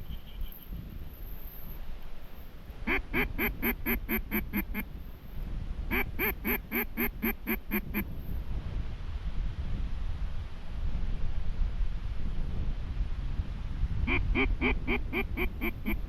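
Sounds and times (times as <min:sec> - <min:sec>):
duck quacking: 0:02.9 - 0:04.8, 0:05.9 - 0:08.1, 0:14.1 - 0:16.0.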